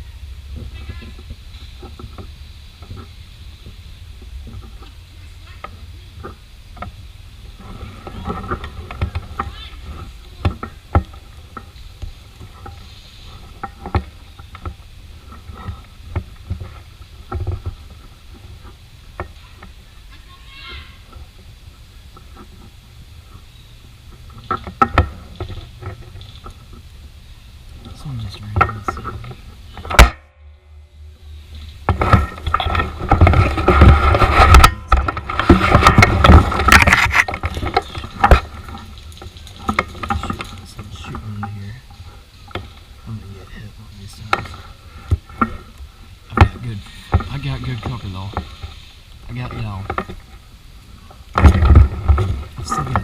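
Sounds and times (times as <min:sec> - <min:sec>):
rustling and scraping on microphone: 0:00.0 - 0:30.0, 0:30.8 - 0:53.0
steady low rumble: 0:20.8 - 0:53.0.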